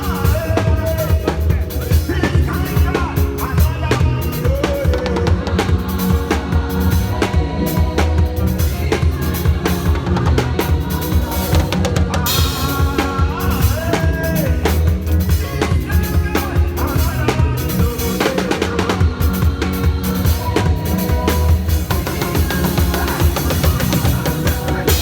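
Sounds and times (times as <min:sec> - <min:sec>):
drum kit snare and bass drum: 0:00.0 - 0:25.0
heavy bass line: 0:00.0 - 0:25.0.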